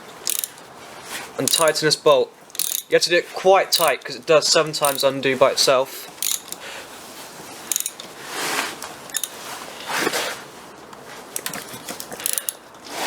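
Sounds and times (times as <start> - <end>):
metal handling noise: 0.0 - 0.8, 1.4 - 3.0, 3.7 - 5.3, 6.1 - 6.7, 7.4 - 10.2, 10.8 - 12.9
hand ratchet clicking: 0.2 - 0.7, 1.4 - 3.0, 3.7 - 4.2, 4.8 - 5.1, 6.2 - 6.6, 7.7 - 8.1, 9.1 - 9.4, 11.4 - 12.7.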